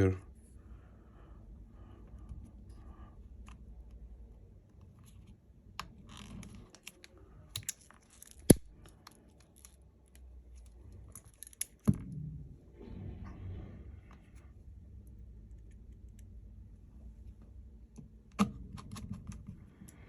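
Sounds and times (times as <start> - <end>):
small clicks and light scraping: 4.6 - 11.9, 14.1 - 16.4.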